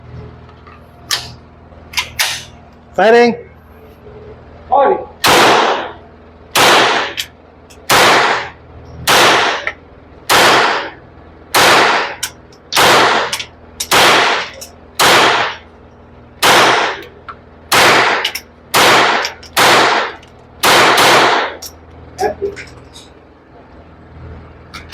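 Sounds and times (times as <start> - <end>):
suppressed pistol shots: 5.2 - 6.0, 6.6 - 7.2, 7.9 - 9.7, 10.3 - 11.0, 11.6 - 12.2, 12.8 - 15.6, 16.4 - 17.0, 17.7 - 21.6.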